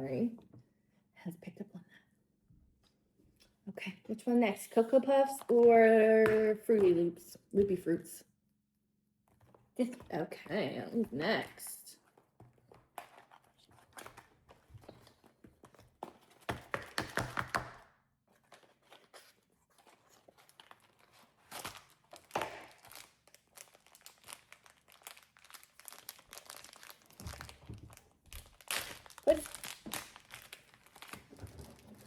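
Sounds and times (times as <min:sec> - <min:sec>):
plastic packaging crinkling: 0:19.8 - 0:32.0.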